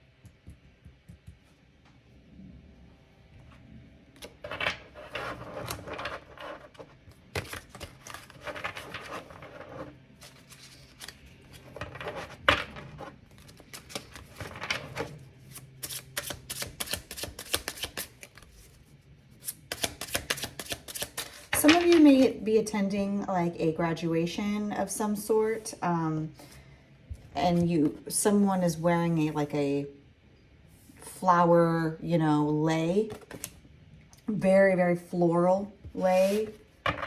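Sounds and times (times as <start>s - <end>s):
cards rustling while shuffled: 4.5s - 22.3s, 36.0s - 37.0s.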